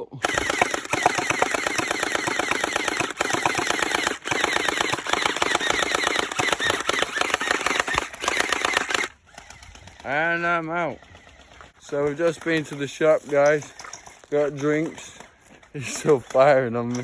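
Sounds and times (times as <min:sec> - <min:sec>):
gel blaster firing full auto: 0:00.2 - 0:11.7.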